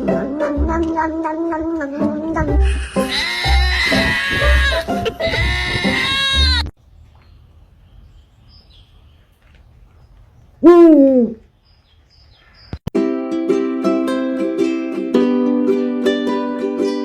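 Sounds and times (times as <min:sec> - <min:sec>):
animal call: 0:00.1 - 0:06.7.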